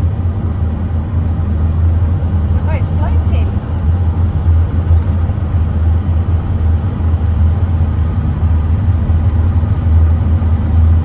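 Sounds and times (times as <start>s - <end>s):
diesel engine droning: 0.0s - 11.0s
road noise: 0.0s - 11.0s.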